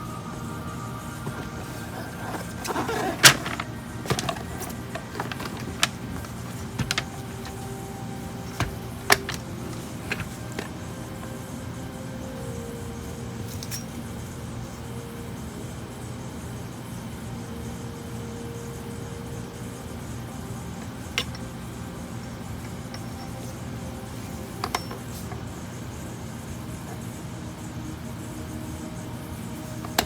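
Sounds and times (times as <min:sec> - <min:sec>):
faint steady hum: 0:00.0 - 0:30.0
plastic clicks and knocks: 0:01.2 - 0:07.8, 0:08.5 - 0:10.7.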